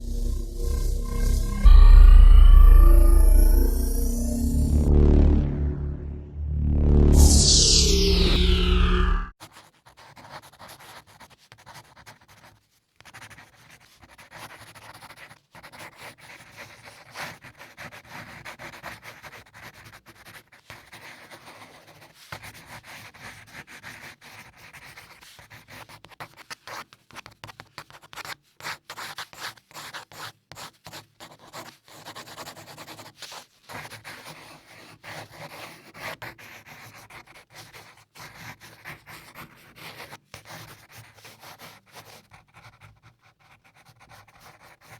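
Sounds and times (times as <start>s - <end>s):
pencil scratching on paper: 9.5s - 44.9s.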